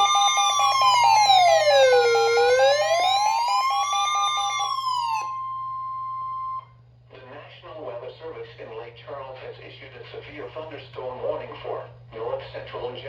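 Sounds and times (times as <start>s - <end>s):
siren-like wail: 0.0s - 6.7s
steady alarm tone: 0.0s - 6.7s.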